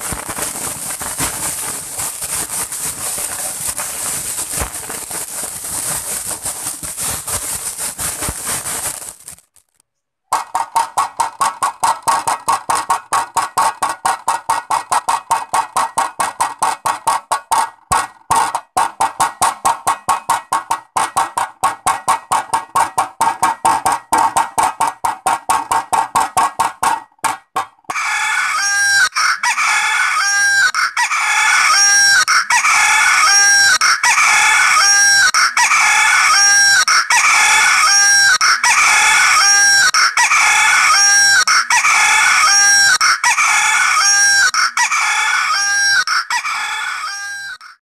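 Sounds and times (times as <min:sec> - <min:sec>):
chicken clucking: 0:27.9 - 0:47.8.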